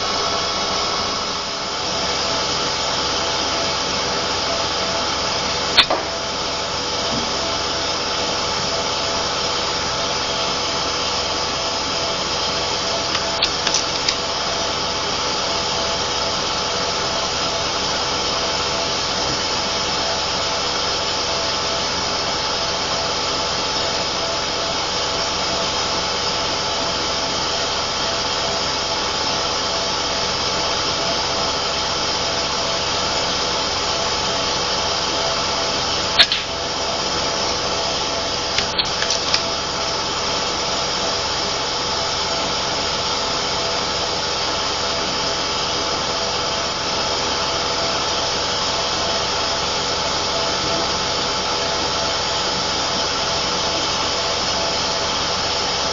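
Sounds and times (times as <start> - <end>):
compressor whine and hiss: 0.0 - 55.9
air rifle shot: 5.8 - 6.3, 36.2 - 36.7.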